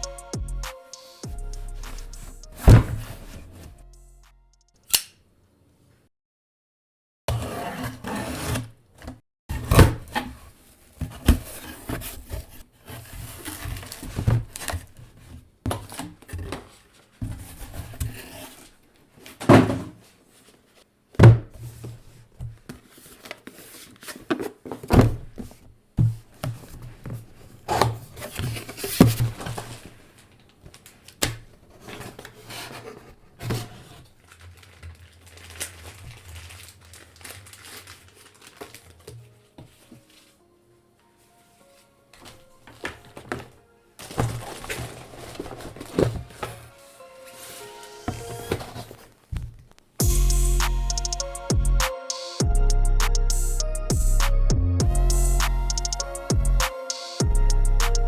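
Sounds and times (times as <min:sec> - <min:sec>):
handling knocks and rustling: 0:42.2 - 0:46.7.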